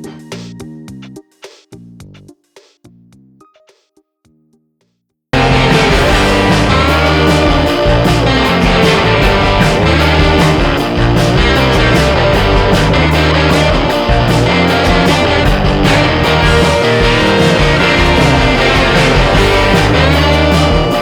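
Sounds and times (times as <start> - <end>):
guitar-led rock music: 5.4 - 21.0.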